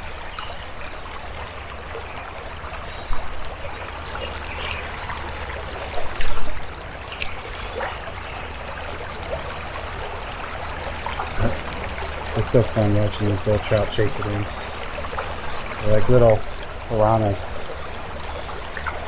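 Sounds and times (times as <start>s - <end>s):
stream water over rocks: 0.0s - 19.0s.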